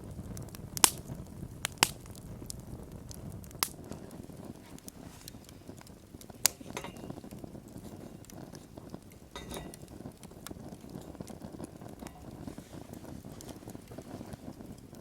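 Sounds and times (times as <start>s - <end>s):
wood fire crackling: 0.0s - 15.0s
utensils clinking on metal: 9.4s - 9.8s.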